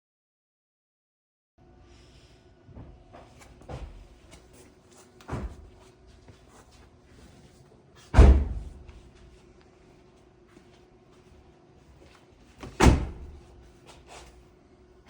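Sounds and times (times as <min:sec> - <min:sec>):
heavy thump: 0:08.2 - 0:08.9.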